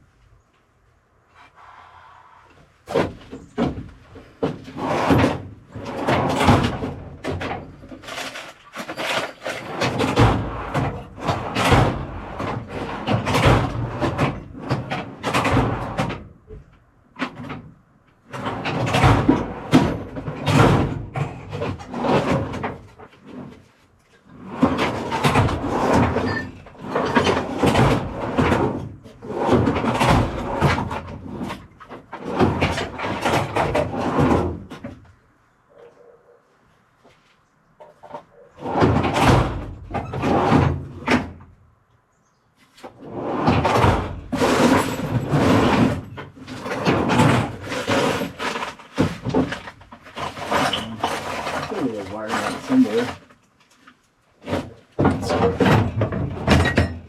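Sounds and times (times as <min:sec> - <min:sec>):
rummaging through small parts: 0:06.0 - 0:11.8, 0:44.3 - 0:57.0.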